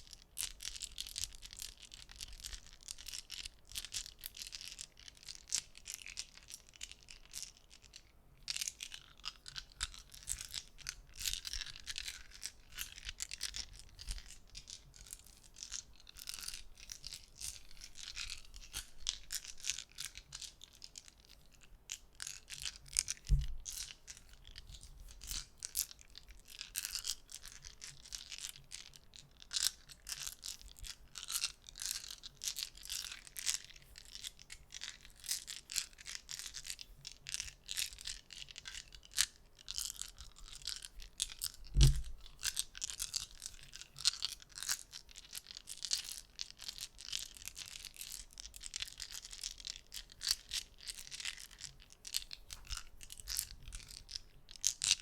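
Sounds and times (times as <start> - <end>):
low thump: 23.3 - 23.6, 41.8 - 42.1.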